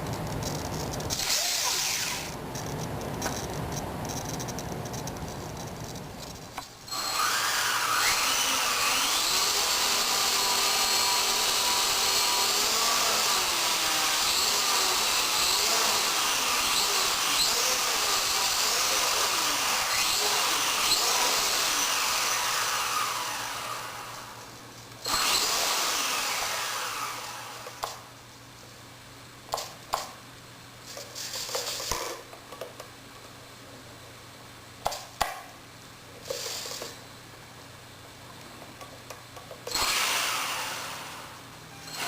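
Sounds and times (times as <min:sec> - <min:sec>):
rc helicopter motor whine: 0:01.2 - 0:02.4, 0:06.9 - 0:24.4, 0:25.0 - 0:27.9, 0:39.7 - 0:42.0.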